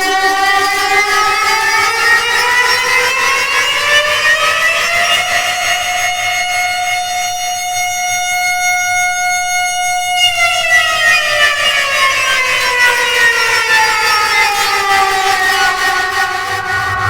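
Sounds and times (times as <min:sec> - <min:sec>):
alarm siren wailing: 0:13.2 - 0:17.0.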